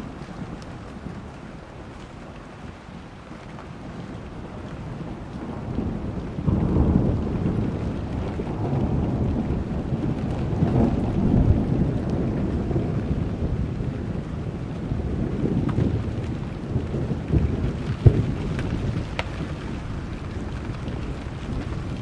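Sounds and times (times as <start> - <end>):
steady rain: 0.0 - 22.0
rolling thunder: 3.8 - 22.0.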